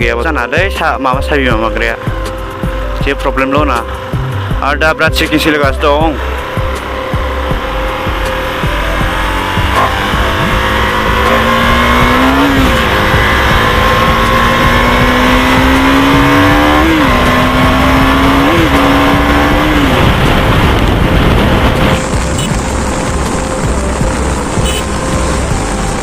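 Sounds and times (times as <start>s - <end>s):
motorcycle engine accelerating: 3.6s - 26.0s
wind rushing: 17.0s - 24.3s.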